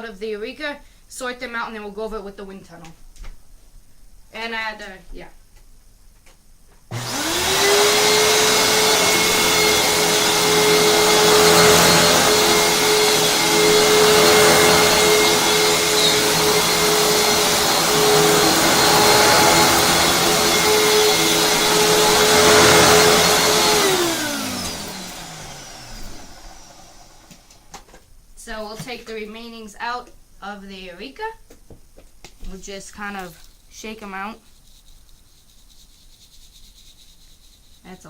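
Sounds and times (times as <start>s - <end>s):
vacuum motor spinning down: 6.9s - 27.7s
vacuum cleaner motor whine: 6.9s - 27.8s.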